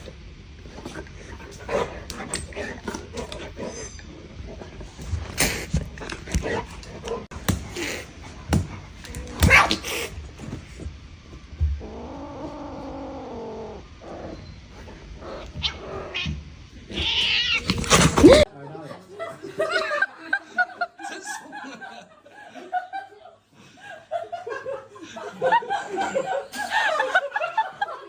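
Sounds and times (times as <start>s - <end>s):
cat yowling: 15.6s - 17.8s.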